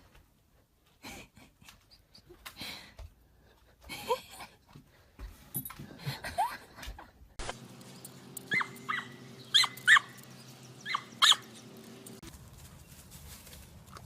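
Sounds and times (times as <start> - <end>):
dog yelping: 8.4 - 10.2, 10.8 - 11.6.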